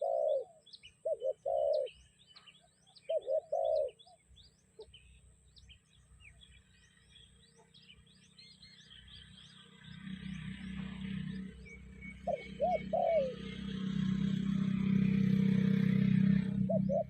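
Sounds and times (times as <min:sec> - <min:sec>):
dove cooing: 0:00.0 - 0:02.1, 0:02.9 - 0:04.2, 0:12.1 - 0:14.0, 0:14.6 - 0:17.0
small birds chirping: 0:00.0 - 0:17.0.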